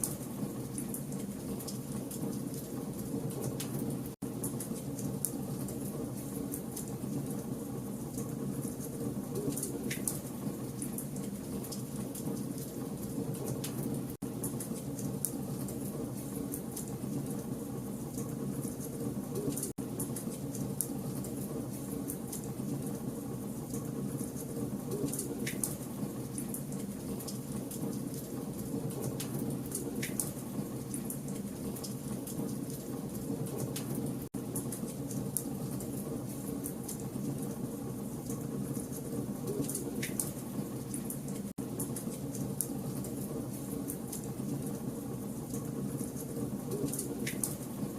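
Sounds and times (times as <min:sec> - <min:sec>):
campfire roar: 0:00.0 - 0:47.9
fire crackles and pops: 0:00.0 - 0:47.9.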